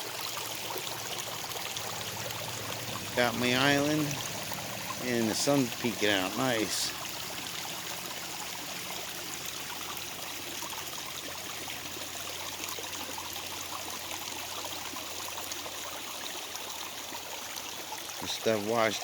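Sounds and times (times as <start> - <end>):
waterfall running over rocks: 0.0 - 19.0.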